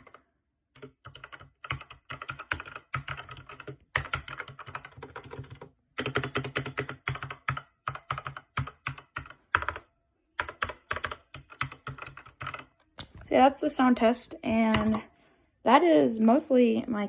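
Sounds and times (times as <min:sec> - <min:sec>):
mechanical keyboard typing: 0:00.0 - 0:00.2, 0:00.8 - 0:13.1, 0:14.7 - 0:15.0.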